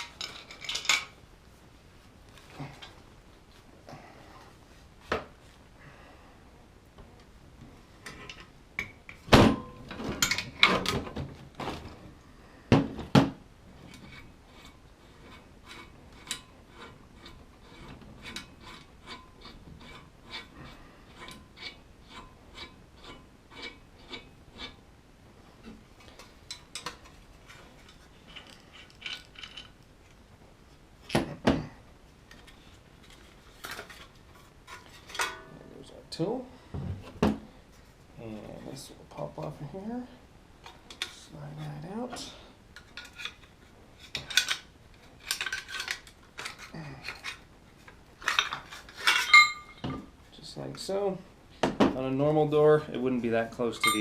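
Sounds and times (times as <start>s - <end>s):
metal tool clanks: 34.7s - 35.6s, 48.2s - 50.0s, 53.7s - 54.0s.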